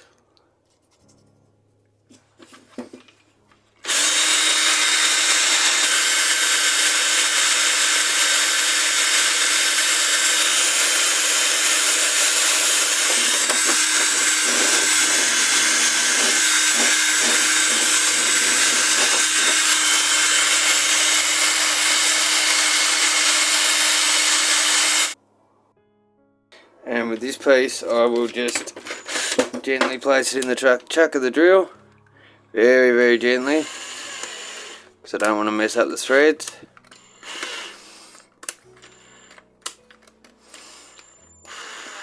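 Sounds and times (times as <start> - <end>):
cordless drill spinning wire brush: 3.8 - 25.2, 28.9 - 29.4, 33.2 - 34.9, 37.2 - 38.2, 40.5 - 42.0.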